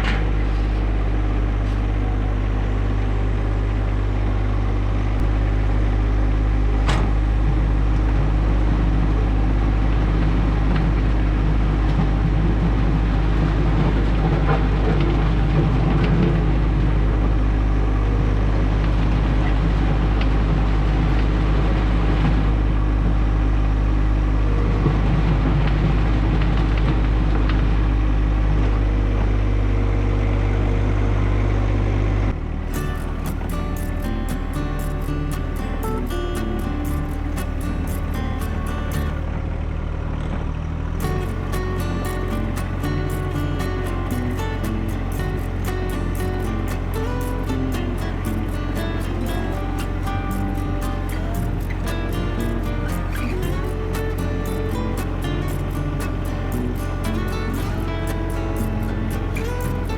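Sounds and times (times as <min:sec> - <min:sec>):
tractor diesel engine running: 0:32.7 - 0:39.3, 0:41.0 - 0:59.9.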